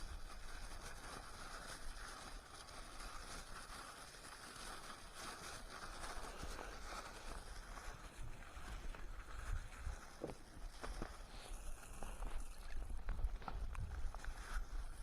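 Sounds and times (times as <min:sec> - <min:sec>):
wind rumble on microphone: 0:06.4 - 0:15.0.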